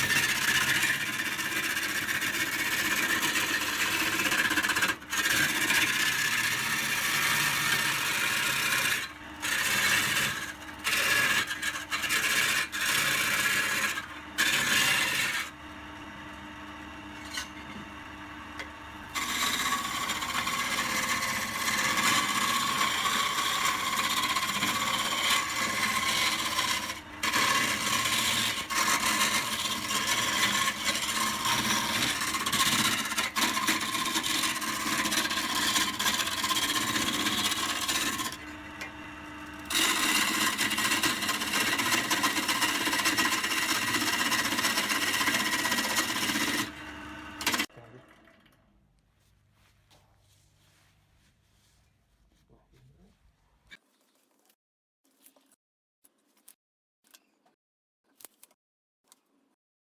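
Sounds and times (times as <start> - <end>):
tool cutting spinning wood: 0.0 - 47.7
wood lathe hum: 0.0 - 47.7.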